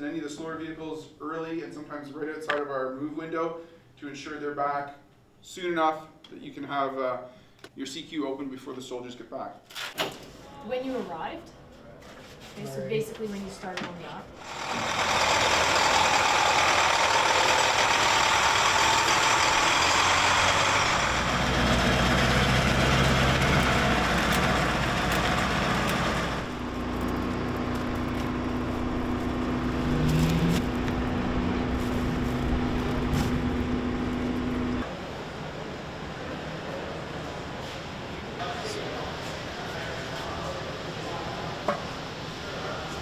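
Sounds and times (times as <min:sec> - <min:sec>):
truck engine running: 0:14.4 - 0:34.8.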